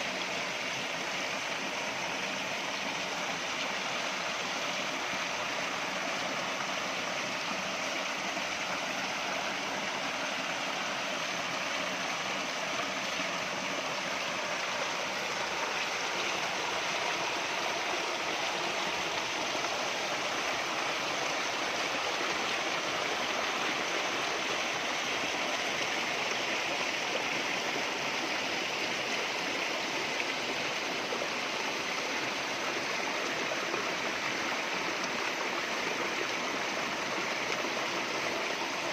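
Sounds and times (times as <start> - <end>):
stream rushing: 0.0 - 38.9.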